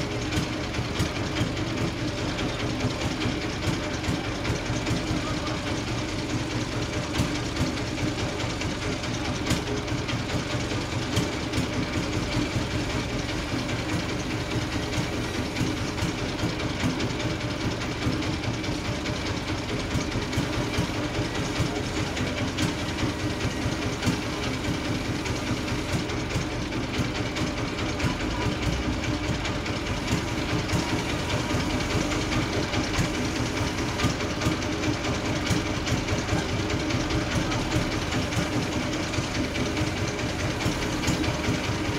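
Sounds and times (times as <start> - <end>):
bandsaw running: 0.0 - 41.9.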